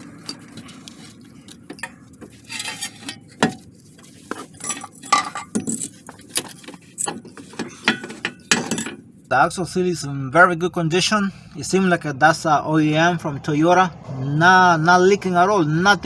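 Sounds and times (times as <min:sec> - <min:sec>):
metallic clinks of tools: 0:00.0 - 0:09.0.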